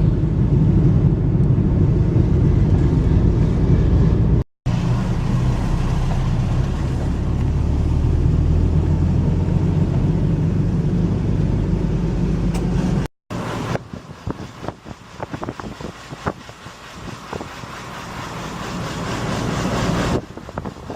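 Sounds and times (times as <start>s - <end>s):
car engine and road noise: 0.0s - 20.9s.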